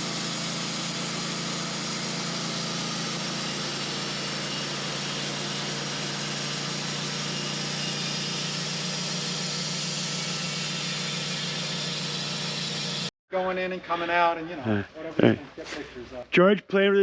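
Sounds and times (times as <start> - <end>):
engine running steadily: 0.0 - 13.1.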